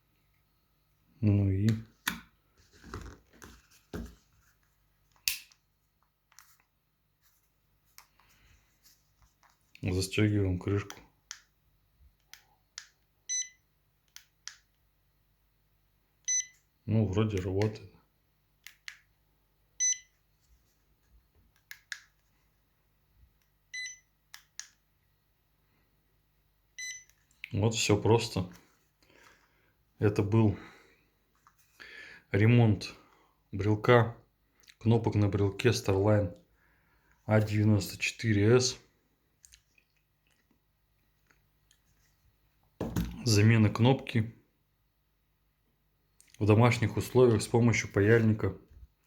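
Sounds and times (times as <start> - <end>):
key fob high beeps: 13.3 - 13.6, 16.3 - 16.6, 19.8 - 20.1, 23.8 - 24.1, 26.8 - 27.1.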